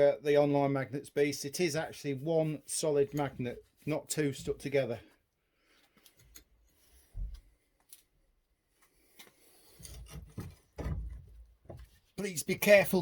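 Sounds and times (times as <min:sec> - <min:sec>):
soft knocks and rustling: 0:07.0 - 0:07.6, 0:09.7 - 0:12.2.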